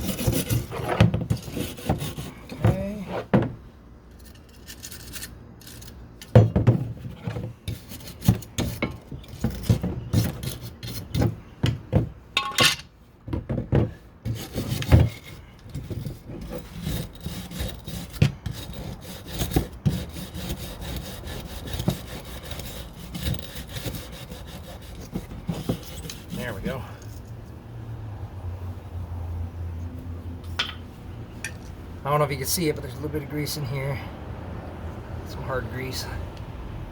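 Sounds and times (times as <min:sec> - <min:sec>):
scraping grease from metal track: 0:14.2 - 0:27.2
knocks of metal part handled: 0:30.5 - 0:30.9.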